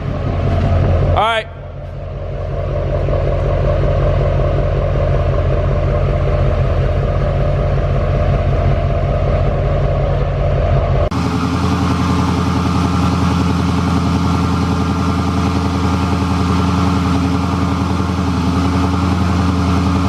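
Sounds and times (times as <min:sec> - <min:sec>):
engine idling: 0:00.0 - 0:20.0.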